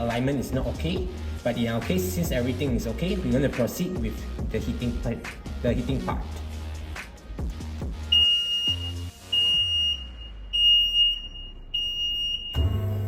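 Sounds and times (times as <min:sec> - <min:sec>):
machine buzzer beeping: 0:08.1 - 0:13.0.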